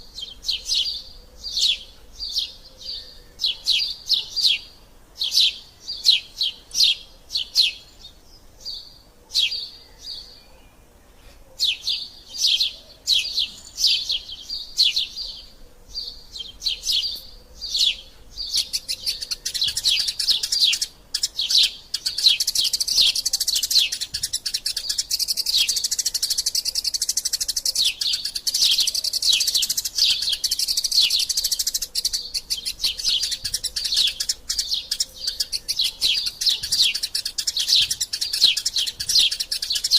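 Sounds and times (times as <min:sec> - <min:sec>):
sparrows chirping: 0:00.0 - 0:39.9.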